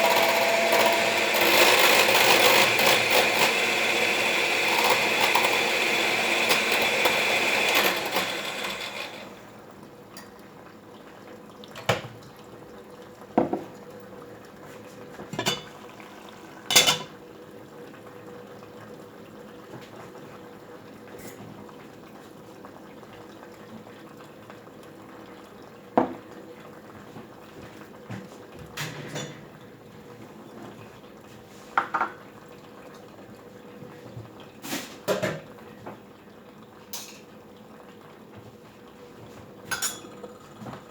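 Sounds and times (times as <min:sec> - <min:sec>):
electric mixer motor whirring: 0:00.0 - 0:09.5
utensil clinking against dish: 0:15.4 - 0:15.7, 0:16.7 - 0:17.1, 0:39.7 - 0:40.2.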